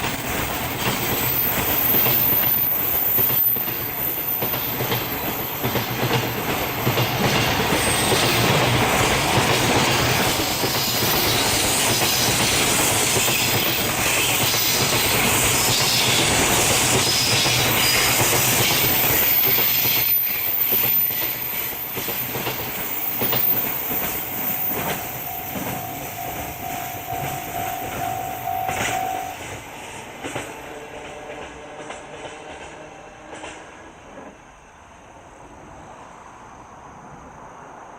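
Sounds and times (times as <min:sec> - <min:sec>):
freight train wheels clattering: 0:00.0 - 0:34.3
steady tone: 0:23.8 - 0:29.4.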